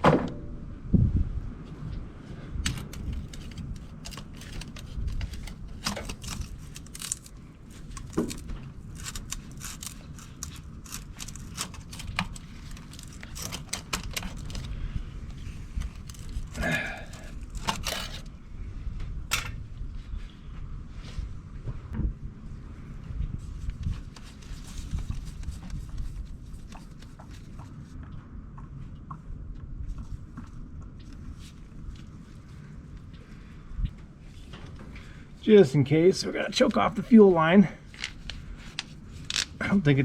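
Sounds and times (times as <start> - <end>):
low rumble: 0.3 - 26.5
parts rattling: 2.6 - 18.3, 37.8 - 39.7
clicks and light scrapes: 2.6 - 18.4, 37.9 - 39.7
crinkling: 2.6 - 18.4, 23.6 - 27.9, 37.8 - 39.9.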